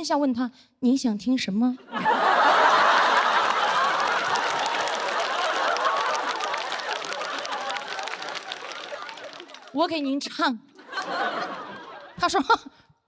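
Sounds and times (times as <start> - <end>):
audience laughing: 1.9 - 9.8, 10.8 - 12.6
scattered clapping: 2.4 - 9.9.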